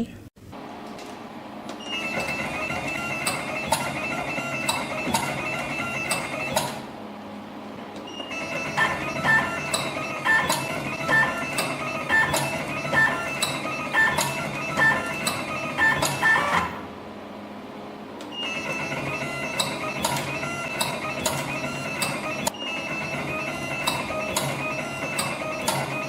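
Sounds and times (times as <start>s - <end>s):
high motor whine: 0.5s - 17.2s
sharp machine clicks: 1.8s - 6.8s, 8.1s - 16.8s, 18.4s - 26.0s.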